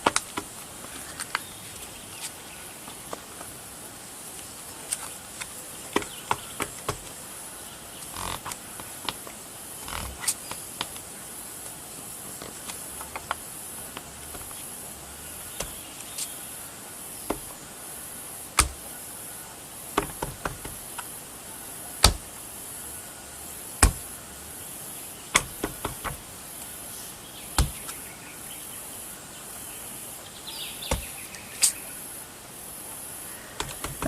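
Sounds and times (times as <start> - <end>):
rubber stamp tapping: 15.6 - 15.8, 17.3 - 17.6, 18.6 - 18.9, 20.0 - 20.8, 22.0 - 22.3, 23.8 - 24.1, 25.4 - 26.2, 27.6 - 28.0, 30.9 - 31.1, 33.6 - 34.0.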